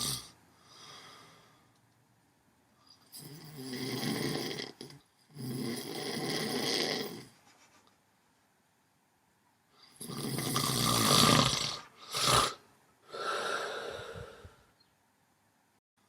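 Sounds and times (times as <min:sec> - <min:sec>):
loud snort: 0:00.0 - 0:00.3, 0:03.2 - 0:07.3, 0:10.0 - 0:13.8
person snoring: 0:00.0 - 0:01.4, 0:03.1 - 0:07.4, 0:09.9 - 0:14.6.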